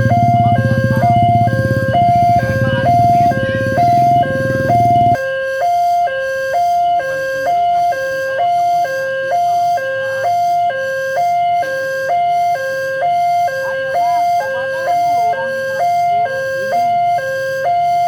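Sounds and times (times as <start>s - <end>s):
loud low rumble: 0.0s - 5.2s
two-tone warning siren: 0.0s - 18.0s.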